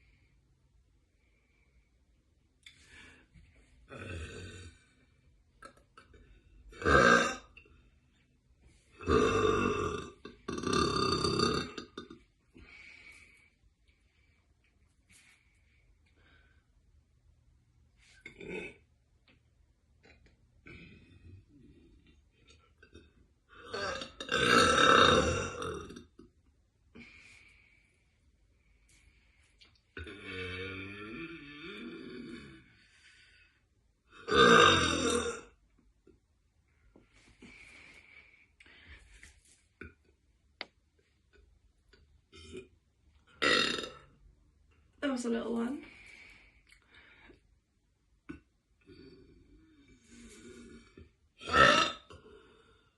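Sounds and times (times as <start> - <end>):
woman burping: 6.8 - 7.7, 9.0 - 12.2, 18.3 - 18.9, 23.6 - 26.2, 34.2 - 35.6, 43.4 - 44.0, 51.4 - 52.2
woman speaking: 45.0 - 45.9.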